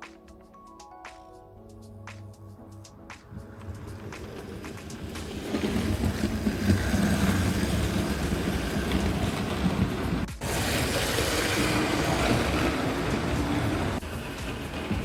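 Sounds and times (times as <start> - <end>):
model train motor and wheels rumbling: 3.7 - 15.0.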